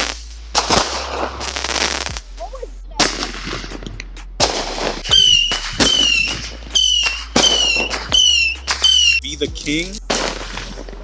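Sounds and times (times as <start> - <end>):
firework shots: 0.0 - 2.4, 3.0 - 9.2, 10.0 - 11.0
shrill falling firework whistle: 5.1 - 9.2.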